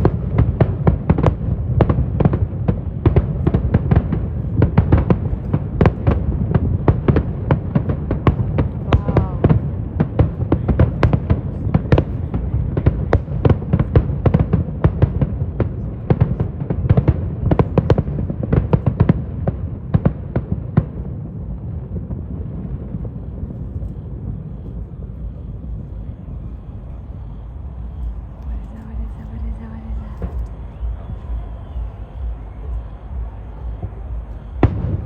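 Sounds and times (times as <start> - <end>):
fireworks bangs: 0.0 - 35.0
low rumble: 19.2 - 35.0.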